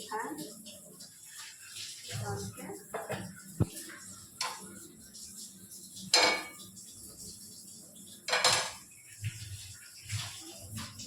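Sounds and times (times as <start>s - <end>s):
metal utensils clinking on pan: 6.1s - 6.7s, 8.3s - 8.9s.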